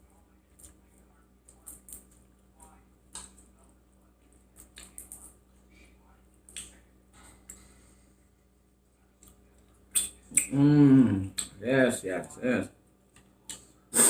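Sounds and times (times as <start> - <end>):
faint chewing and mouth smacks: 0.2 - 7.8, 8.8 - 10.6, 11.2 - 11.6.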